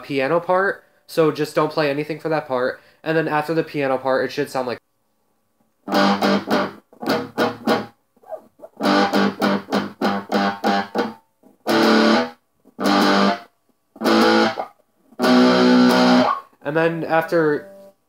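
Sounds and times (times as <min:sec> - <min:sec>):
electric guitar chords: 0:05.9 - 0:07.9, 0:08.8 - 0:16.4.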